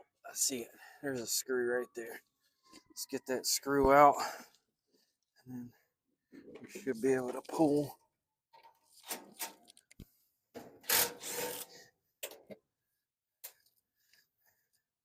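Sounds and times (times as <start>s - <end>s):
scraping on sheet metal: 10.8s - 11.8s.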